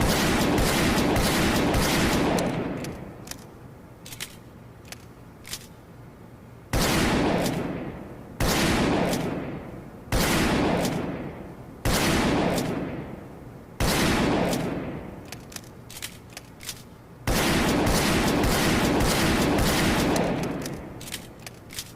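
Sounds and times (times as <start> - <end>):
revolver gunshots with echo: 0.0 - 3.2, 6.7 - 15.3, 17.3 - 21.3
light clicks: 2.3 - 5.8, 14.4 - 17.0, 20.0 - 21.9.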